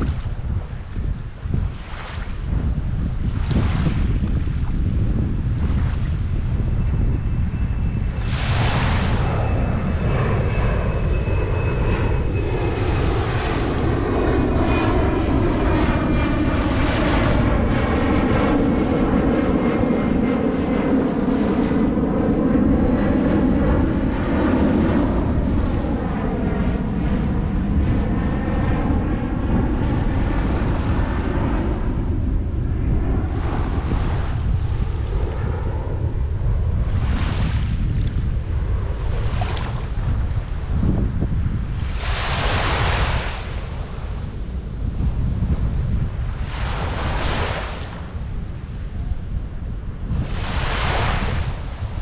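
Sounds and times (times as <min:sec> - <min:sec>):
airplane engine drone: 0:00.0 - 0:52.0
wind buffeting microphone: 0:00.0 - 0:52.0
surf breaking on sand: 0:08.2 - 0:09.4, 0:20.5 - 0:21.9, 0:41.8 - 0:44.9, 0:46.3 - 0:49.0, 0:50.1 - 0:52.0.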